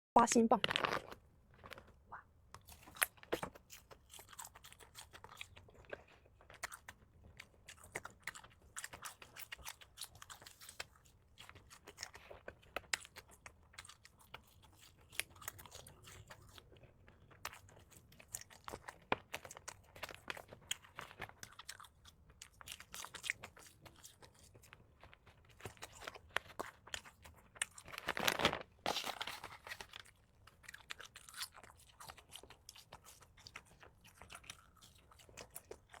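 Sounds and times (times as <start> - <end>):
crunching bites: 0.7 - 1.9
wet chewing: 0.7 - 28.3, 29.0 - 36.0.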